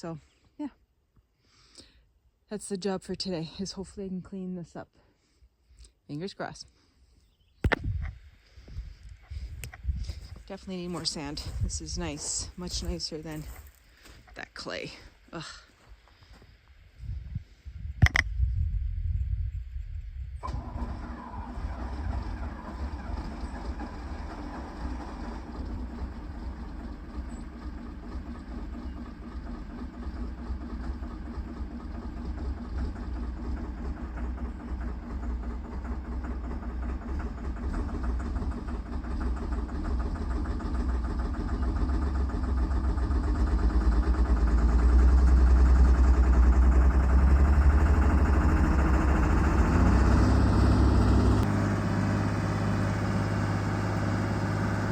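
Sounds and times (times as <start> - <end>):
diesel engine running: 7.6 - 17.4, 20.3 - 54.9.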